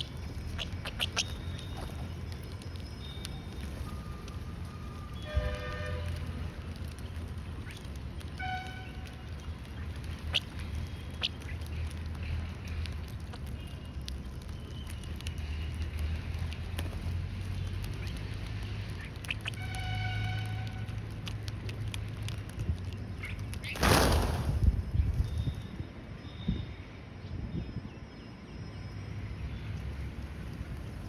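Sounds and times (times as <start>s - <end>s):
lovebirds squawking: 0.0s - 2.6s, 4.9s - 24.4s
sharp bird chirps: 0.0s - 4.0s.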